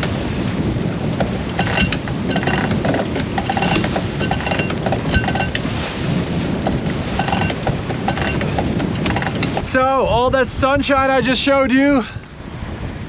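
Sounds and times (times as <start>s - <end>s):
sailboat blocks and winch clicking: 0.0s - 9.7s
wind and water rushing: 0.0s - 13.0s.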